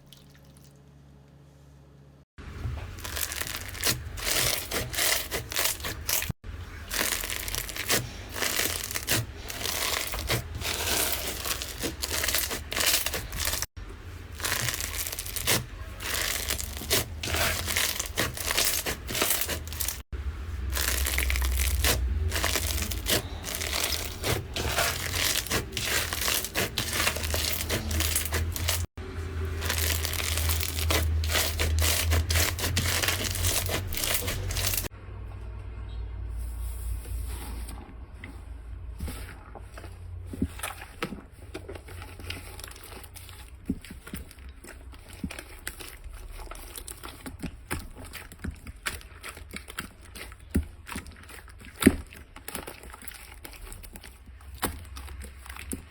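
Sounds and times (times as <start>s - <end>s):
slime crackling and popping: 2.9s - 13.7s, 14.3s - 20.0s, 20.7s - 28.9s, 29.6s - 34.9s.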